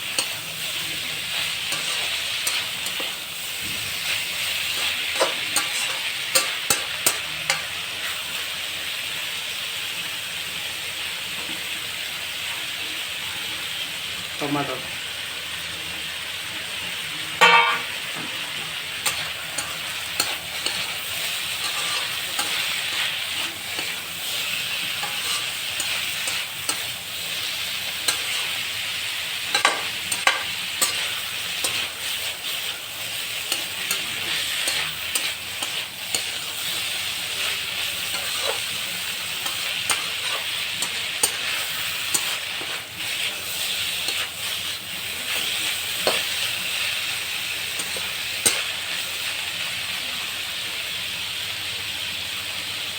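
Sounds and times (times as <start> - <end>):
spatula clicking and scraping pan: 0.0 - 8.2, 17.4 - 49.4
curry sizzling in a pan: 0.0 - 52.9.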